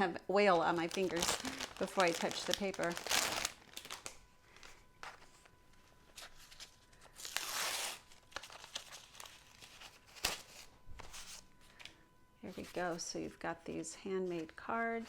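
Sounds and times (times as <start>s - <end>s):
packaging crinkling and rustling: 0.4s - 11.9s
tearing rustle: 0.6s - 5.3s, 6.2s - 11.4s.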